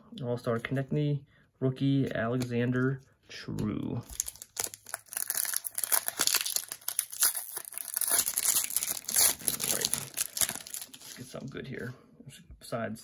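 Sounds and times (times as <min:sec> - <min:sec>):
wrapper tearing and crinkling: 0:04.0 - 0:11.5.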